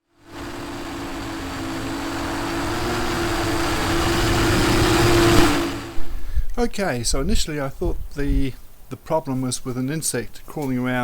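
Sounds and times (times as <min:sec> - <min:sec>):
mechanical drone with rushing noise: 0:00.0 - 0:06.5.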